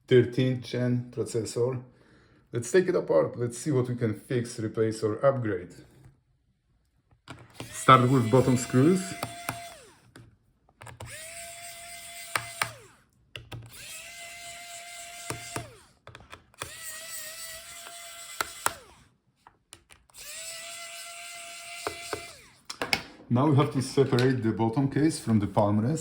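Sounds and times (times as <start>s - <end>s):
electric screwdriver motor whine: 7.5s - 10.1s, 10.9s - 13.0s, 13.6s - 19.1s, 20.1s - 22.7s.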